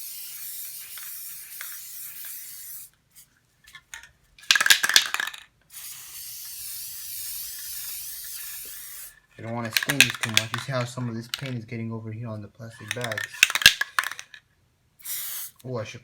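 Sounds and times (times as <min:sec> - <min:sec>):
spray can ball rattling: 0:00.0 - 0:02.9, 0:03.7 - 0:11.6, 0:12.8 - 0:14.4, 0:15.0 - 0:15.6
spray can hissing: 0:00.0 - 0:02.9, 0:04.5 - 0:10.6, 0:15.0 - 0:15.6.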